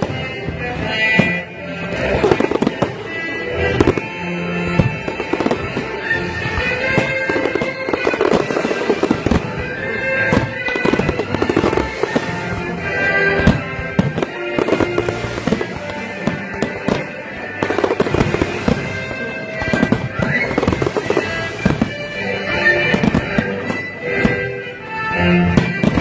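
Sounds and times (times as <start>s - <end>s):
fireworks bangs and crackles: 0.0s - 26.0s
music playing: 0.0s - 26.0s.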